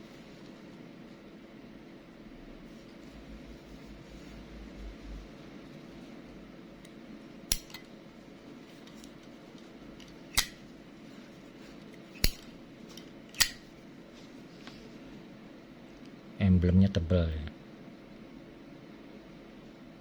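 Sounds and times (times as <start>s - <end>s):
lighter lid clicking open and shut: 7.5s - 7.9s, 10.3s - 10.7s, 12.2s - 12.5s, 13.4s - 13.7s.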